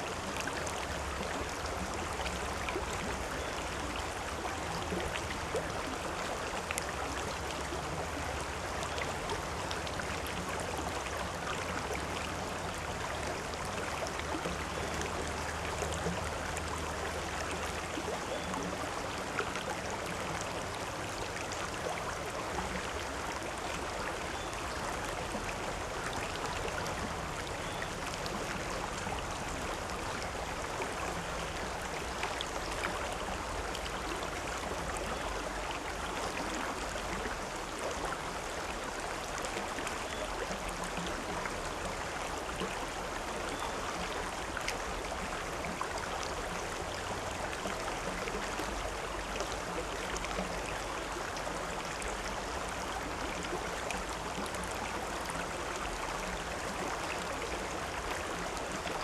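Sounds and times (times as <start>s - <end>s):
river water flowing: 0.0s - 59.0s.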